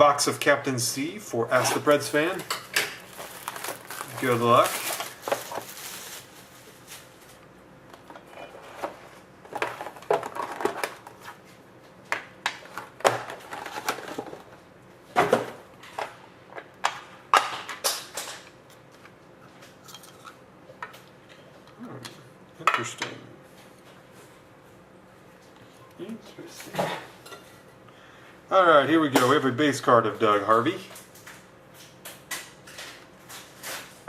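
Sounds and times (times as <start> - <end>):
packaging tearing and crinkling: 1.6 - 7.1.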